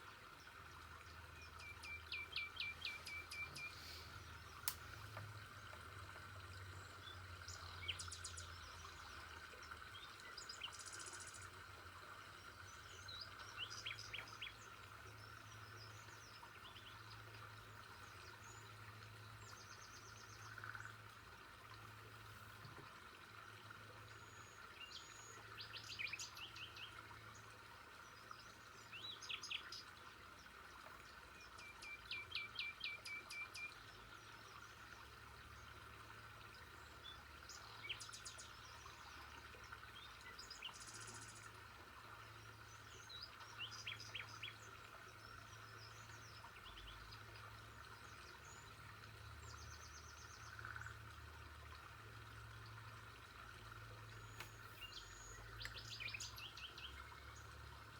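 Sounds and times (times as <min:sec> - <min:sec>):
birds chirping: 0:01.4 - 0:05.0.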